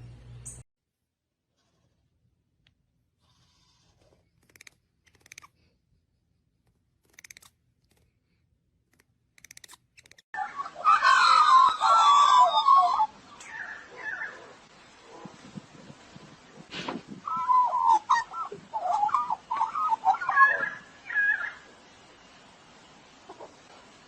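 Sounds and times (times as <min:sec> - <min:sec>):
bird screeching and squawking: 0:10.4 - 0:14.5, 0:17.3 - 0:21.7.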